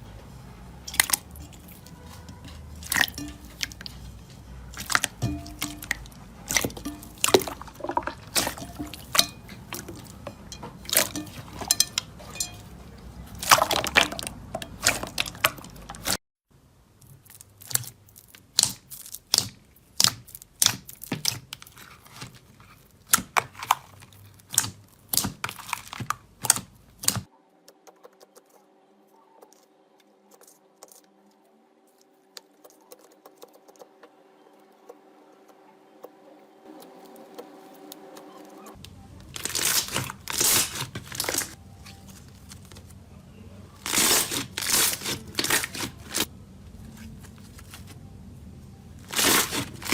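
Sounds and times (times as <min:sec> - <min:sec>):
slime squishing with wet clicks: 0:00.8 - 0:16.2, 0:17.0 - 0:27.3
faint steady hum: 0:27.3 - 0:49.9.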